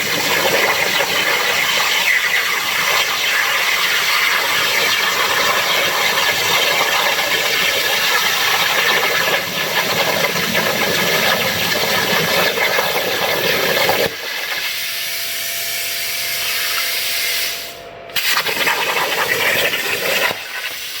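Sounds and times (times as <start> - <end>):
plasma torch arc hissing: 0.0 - 6.7, 14.1 - 21.0.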